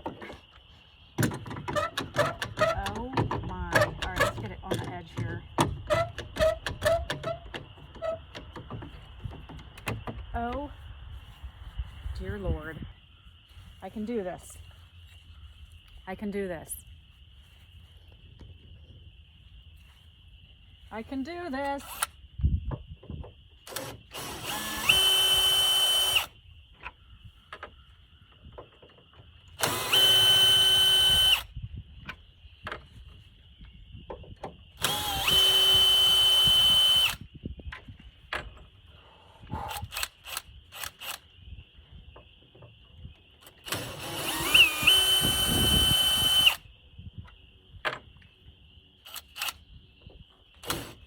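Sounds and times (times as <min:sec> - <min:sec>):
cordless drill whine: 0:23.7 - 0:26.4, 0:29.6 - 0:31.5, 0:34.8 - 0:37.2, 0:43.4 - 0:46.6.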